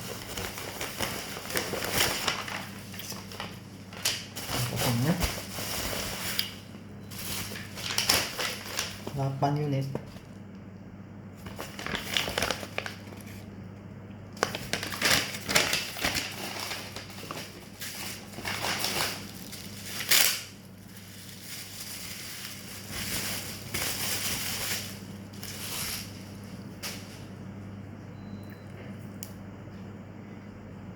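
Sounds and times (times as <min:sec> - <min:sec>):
packaging crinkling: 0:00.0 - 0:09.3, 0:11.4 - 0:13.5, 0:14.3 - 0:27.3.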